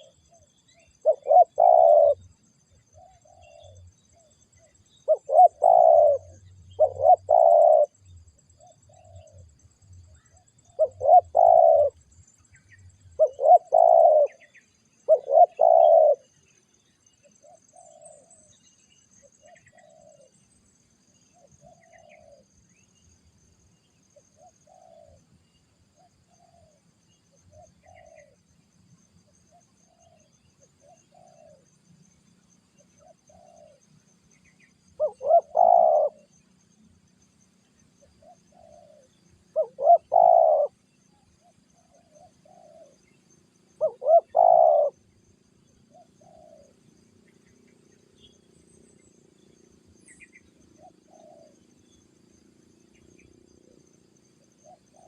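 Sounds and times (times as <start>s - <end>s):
doves cooing: 0.0s - 2.3s, 5.0s - 8.0s, 10.7s - 12.0s, 12.8s - 16.3s, 19.4s - 20.3s, 21.5s - 22.5s, 24.4s - 25.2s, 27.5s - 28.4s, 30.8s - 31.7s, 33.0s - 33.8s, 35.0s - 36.4s, 38.2s - 40.8s, 41.4s - 43.0s, 43.8s - 45.0s, 45.9s - 46.8s, 50.4s - 51.6s.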